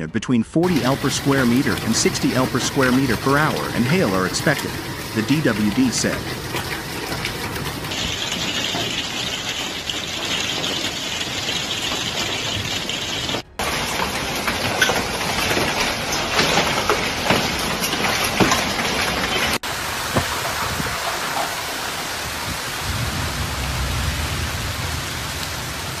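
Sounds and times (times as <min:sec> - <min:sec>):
hailstones hitting hard surfaces: 0:00.6 - 0:26.0
heavy rain hissing: 0:00.6 - 0:26.0
low rumble: 0:22.3 - 0:26.0.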